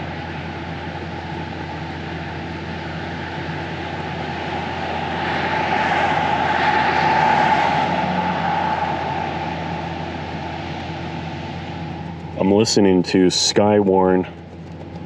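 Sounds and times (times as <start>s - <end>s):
engine hum: 0.0s - 15.0s
rushing noise: 2.1s - 12.6s.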